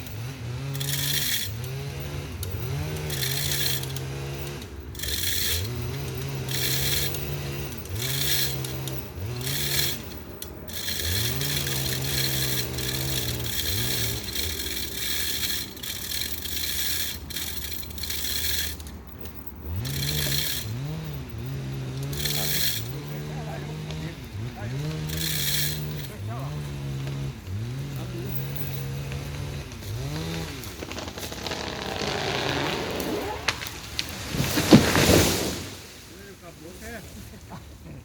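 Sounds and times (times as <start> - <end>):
chainsaw revving and cutting wood: 0.0 - 37.0.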